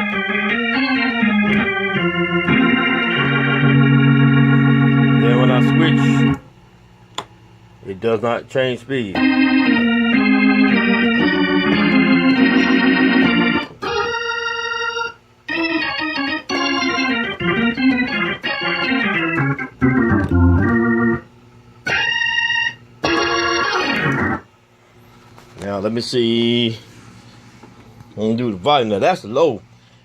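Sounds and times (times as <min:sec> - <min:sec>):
organ through rotary speaker: 0:00.0 - 0:06.5, 0:09.0 - 0:25.6.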